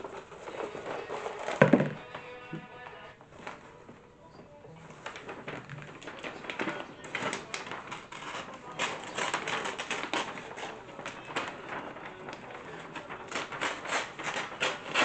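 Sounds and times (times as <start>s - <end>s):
wrapping paper crinkling: 0.0s - 15.0s.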